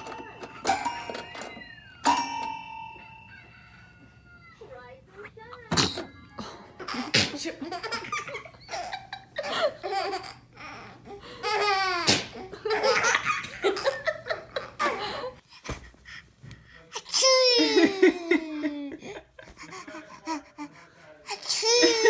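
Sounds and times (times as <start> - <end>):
people laughing: 6.4 - 10.2, 12.4 - 15.4, 17.6 - 20.7.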